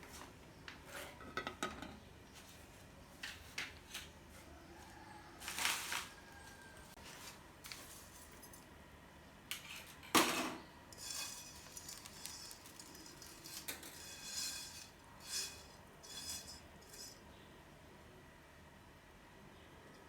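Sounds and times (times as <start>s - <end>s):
utensil scraping cookware: 9.6s - 17.2s.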